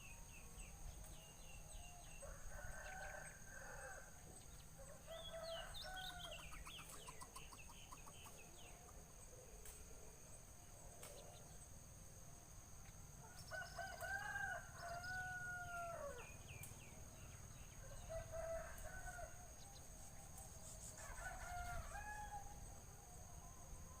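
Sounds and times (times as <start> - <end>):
rooster crowing: 2.2 - 4.1, 4.8 - 6.4, 13.4 - 16.3, 17.8 - 19.6, 21.0 - 22.6
small birds chirping: 4.4 - 9.0.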